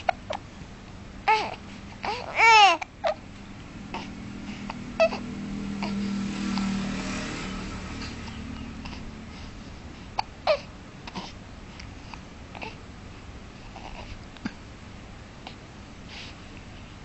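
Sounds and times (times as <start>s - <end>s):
low hum: 3.0s - 10.2s.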